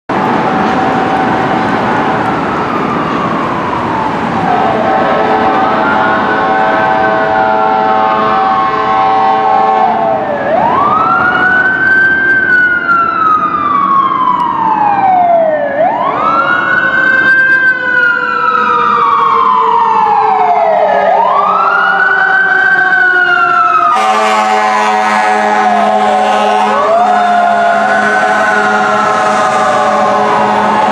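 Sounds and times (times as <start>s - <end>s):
fire engine siren wailing: 0.1s - 30.9s
air horn blasts: 4.5s - 10.2s, 23.9s - 30.9s.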